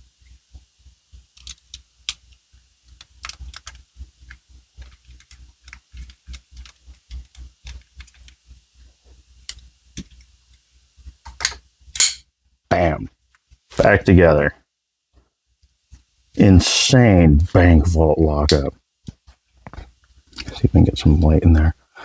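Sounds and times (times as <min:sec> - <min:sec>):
sharp knife click: 0:11.4 - 0:12.2.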